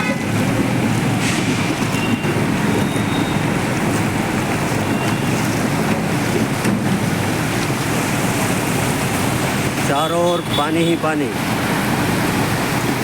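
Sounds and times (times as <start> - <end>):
wind buffeting microphone: 0.0 - 9.8
road traffic rushing: 0.0 - 13.0
water splashing: 0.0 - 13.0.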